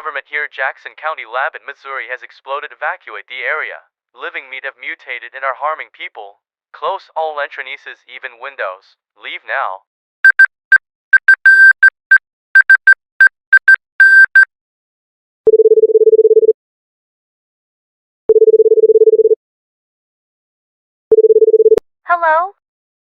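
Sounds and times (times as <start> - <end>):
short telephone beeps: 10.3 - 10.6, 11.2 - 12.0, 12.6 - 14.5
telephone ringing tone: 15.5 - 16.6, 18.3 - 19.4, 21.1 - 21.8.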